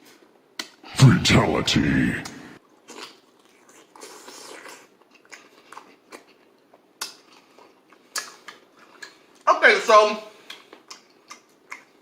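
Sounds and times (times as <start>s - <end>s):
person chewing: 2.2s - 9.4s, 10.4s - 12.0s
sharp mouth clicks: 8.1s - 9.2s.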